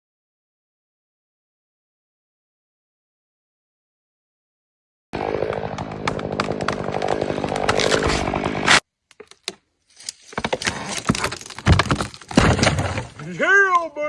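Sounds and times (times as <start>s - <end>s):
chainsaw cutting: 5.2s - 8.8s
sharp cracks and knocks: 5.4s - 13.4s.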